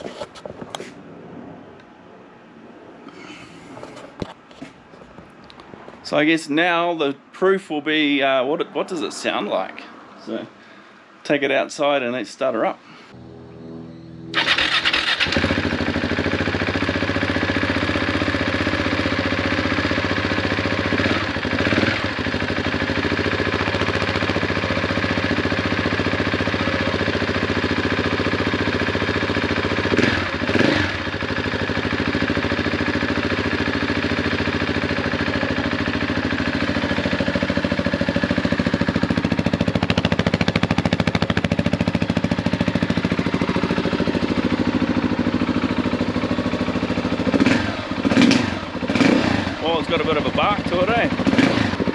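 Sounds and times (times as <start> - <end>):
engine revving blips: 13.2 - 15.8, 47.3 - 49.6, 51.2 - 51.9
motorcycle engine idling: 13.8 - 51.9.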